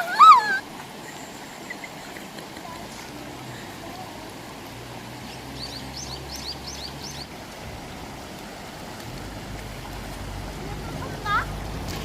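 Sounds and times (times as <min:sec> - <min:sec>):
mountain stream rushing: 0:00.0 - 0:12.0
bird chirping: 0:05.3 - 0:07.3.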